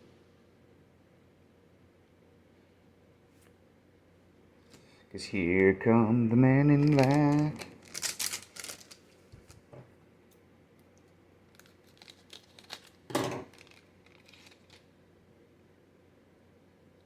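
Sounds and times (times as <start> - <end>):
card pack wrapper crinkling: 6.7 - 9.7, 11.5 - 14.9
cards rustling and clicking: 6.7 - 9.7, 11.5 - 14.9.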